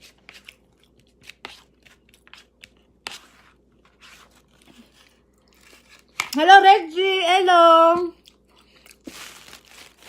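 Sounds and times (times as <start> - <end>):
chewing with light crunches: 0.4 - 3.0, 4.4 - 6.2, 8.1 - 9.4.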